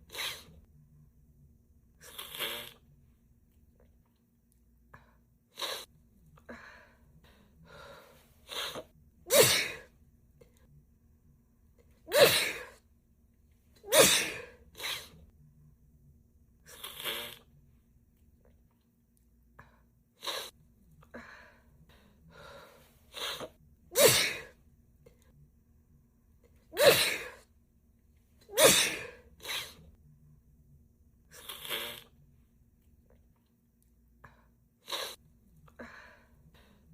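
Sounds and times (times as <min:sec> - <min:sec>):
woman sneezing: 0:08.5 - 0:09.9, 0:12.1 - 0:12.8, 0:13.8 - 0:15.2, 0:23.2 - 0:24.5, 0:26.8 - 0:27.4, 0:28.5 - 0:29.8.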